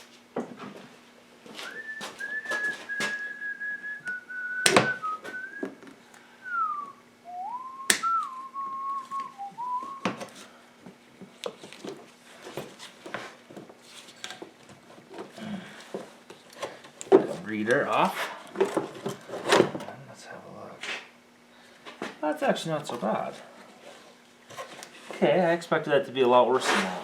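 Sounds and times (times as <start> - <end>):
man whistling a tune: 1.6 - 5.8, 6.4 - 10.2.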